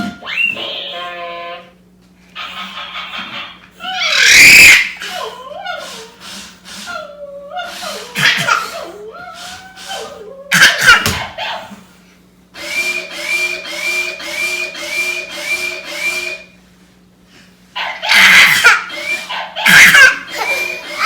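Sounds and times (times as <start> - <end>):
robot toy whirring and buzzing: 12.6 - 16.5, 18.1 - 21.0.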